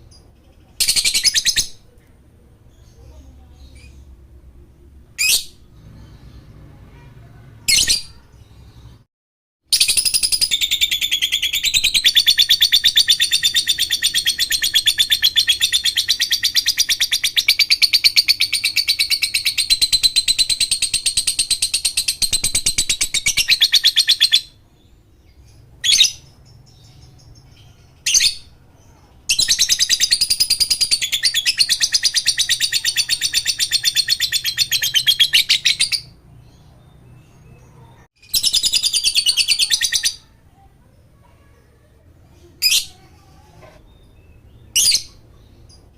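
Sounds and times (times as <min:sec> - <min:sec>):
bird rapid chattering trill: 0:09.7 - 0:24.6, 0:29.3 - 0:36.2.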